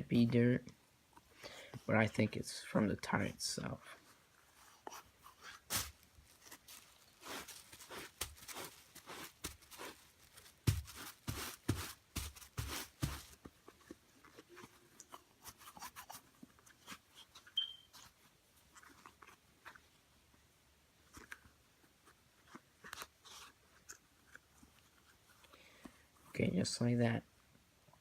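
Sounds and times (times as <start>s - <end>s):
towel rustling on rubber tires: 4.1s - 16.0s.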